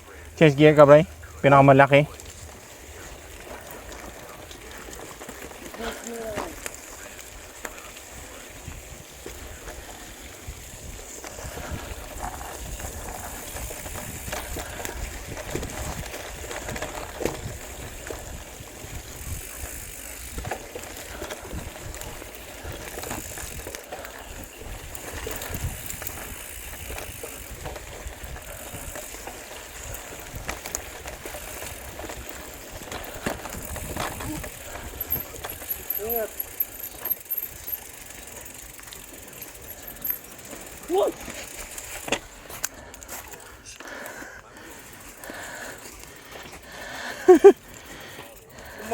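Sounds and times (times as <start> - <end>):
bike clicks and rattles: 0.0 - 48.9
bike tyre and drivetrain noise: 0.0 - 48.9
wind rumble on microphone: 10.3 - 19.7, 24.3 - 29.0, 29.8 - 35.6.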